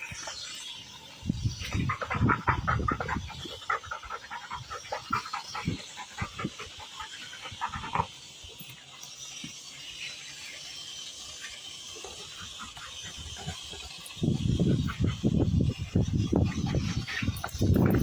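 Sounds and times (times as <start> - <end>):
dog panting quickly: 1.7 - 8.1.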